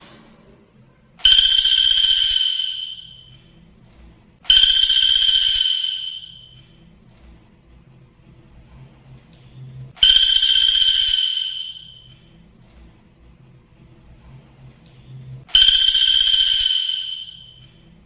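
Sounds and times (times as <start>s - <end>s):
woodpecker rolling trill: 1.2s - 3.4s, 4.5s - 6.6s, 10.0s - 12.1s, 15.5s - 17.6s.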